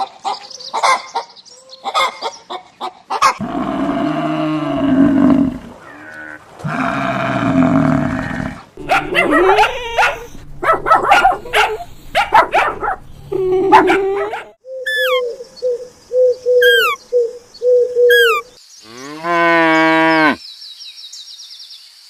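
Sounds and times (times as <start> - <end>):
loud animal calls: 3.1 - 15.3, 16.6 - 17.0
cow mooing: 3.4 - 10.3, 18.9 - 20.4.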